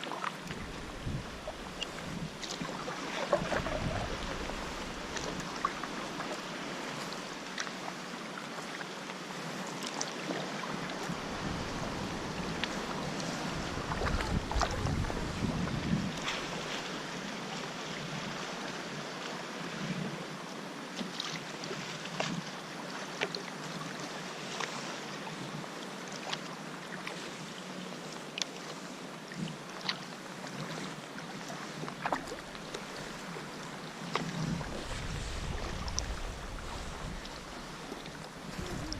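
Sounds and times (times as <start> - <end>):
paddle splashing and dripping: 0.0 - 7.9, 9.7 - 16.9, 28.4 - 38.9
hiss of moving water: 0.0 - 8.2, 32.0 - 38.9.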